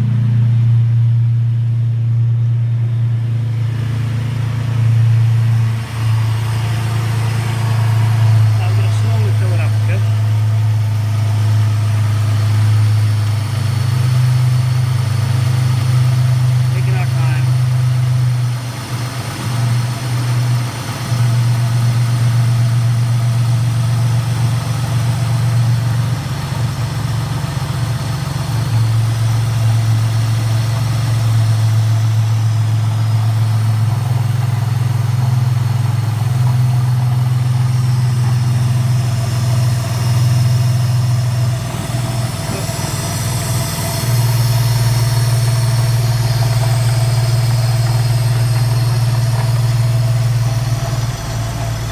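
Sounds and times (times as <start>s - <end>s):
ac compressor running: 0.0s - 51.9s
car engine idling: 0.0s - 51.9s.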